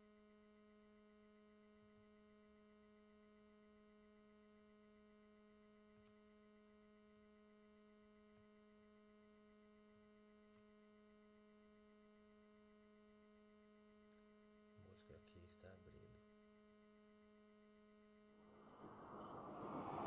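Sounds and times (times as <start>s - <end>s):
faint steady hum: 0.0s - 20.0s
faint clicks: 5.9s - 6.4s.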